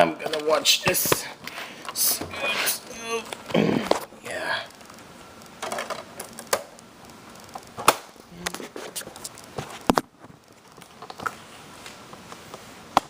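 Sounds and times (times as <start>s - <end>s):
hard plastic clicking and creaking: 4.7s - 10.0s.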